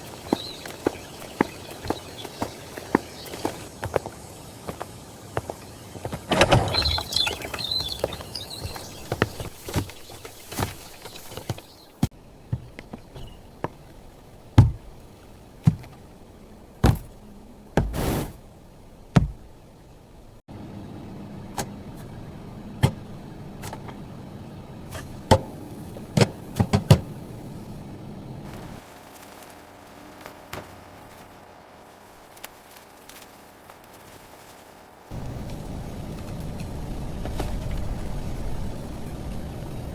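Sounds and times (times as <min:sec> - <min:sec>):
rustle: 0:00.0 - 0:20.2, 0:28.4 - 0:39.9.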